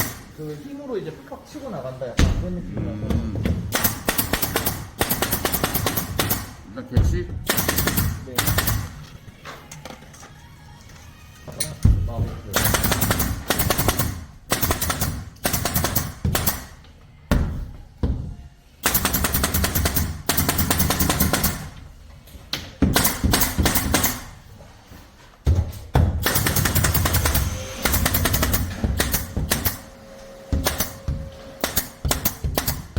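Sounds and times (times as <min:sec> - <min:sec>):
air stapler firing: 0:26.2 - 0:29.9, 0:30.6 - 0:31.0, 0:31.6 - 0:32.9.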